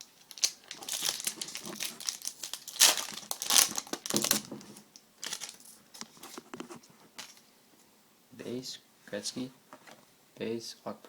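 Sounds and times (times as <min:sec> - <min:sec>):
card pack wrapper crinkling: 0:00.0 - 0:06.4.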